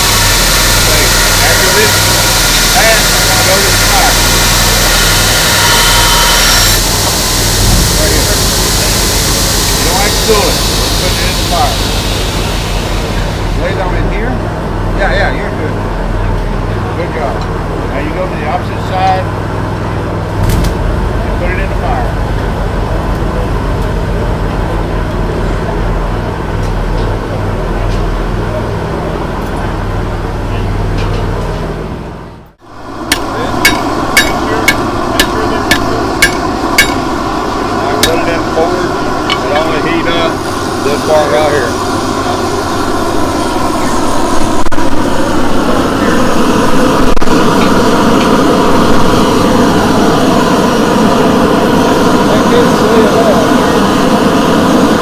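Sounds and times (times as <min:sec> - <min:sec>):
low hum: 0:00.0 - 0:18.0, 0:19.3 - 0:55.0
forge fire roaring: 0:00.0 - 0:55.0.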